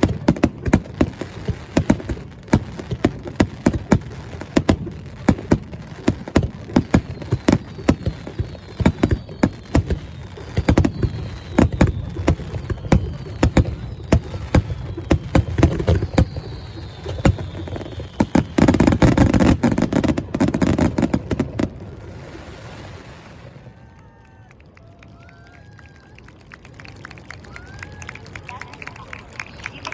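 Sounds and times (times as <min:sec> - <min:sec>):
falling firework whistles: 0:05.4 - 0:23.9.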